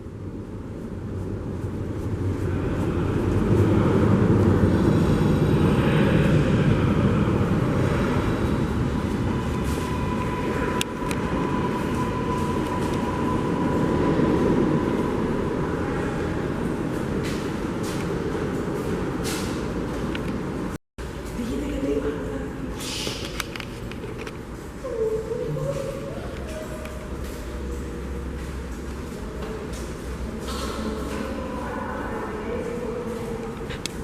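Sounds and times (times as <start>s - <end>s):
subway train rumble: 0.0s - 34.0s
thin high whine: 4.7s - 16.2s.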